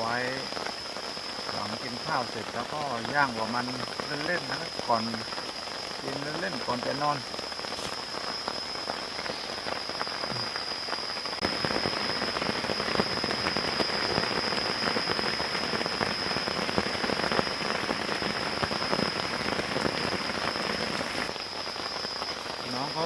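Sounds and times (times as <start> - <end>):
rain falling in forest: 0.0 - 23.0.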